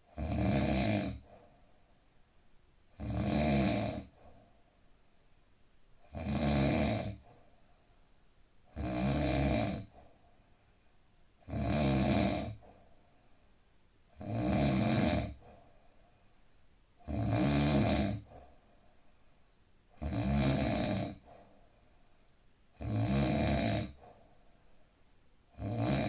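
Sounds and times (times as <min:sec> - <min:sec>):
man snoring: 0:00.1 - 0:01.3, 0:03.0 - 0:04.1, 0:06.1 - 0:07.2, 0:08.7 - 0:09.9, 0:11.4 - 0:12.6, 0:14.2 - 0:15.4, 0:17.1 - 0:18.3, 0:20.0 - 0:21.2, 0:22.8 - 0:24.0, 0:25.5 - 0:26.0
quiet breathing: 0:00.9 - 0:26.0.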